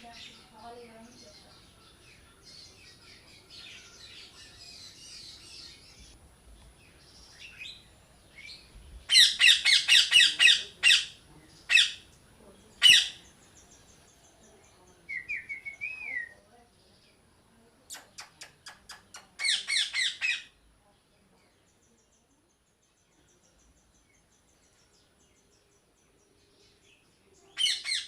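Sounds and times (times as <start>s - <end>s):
small birds twittering: 0.0s - 28.0s
parrot squawking: 9.1s - 12.0s, 12.8s - 13.2s, 19.4s - 20.5s, 27.6s - 28.0s.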